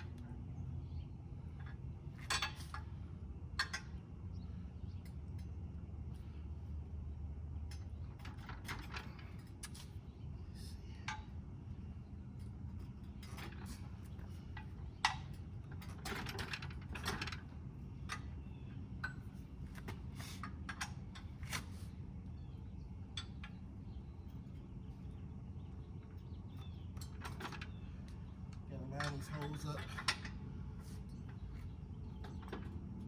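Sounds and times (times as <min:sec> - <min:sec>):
steady low hum: 0:00.0 - 0:33.0
metal clinks and knocks: 0:12.4 - 0:18.3.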